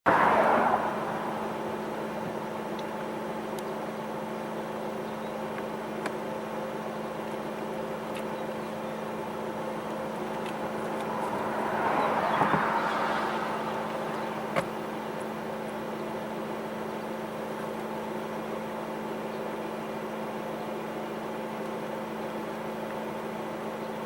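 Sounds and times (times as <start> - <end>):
vehicle passing: 0.0 - 2.6, 9.6 - 15.7
vehicle approaching: 0.0 - 3.9, 7.8 - 16.6
constant low hum: 0.1 - 24.0.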